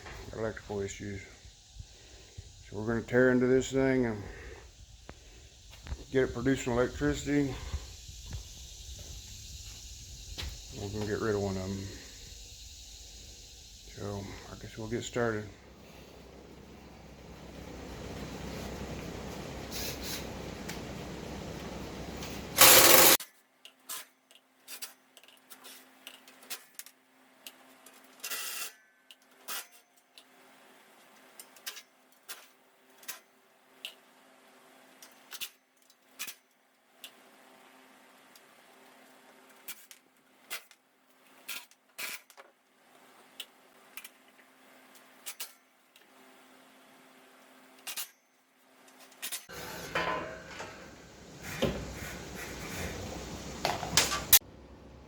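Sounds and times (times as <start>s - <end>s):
faint steady hum: 0.0s - 23.2s
short loud burst: 22.6s - 23.2s
hand tools clinking: 49.5s - 51.5s.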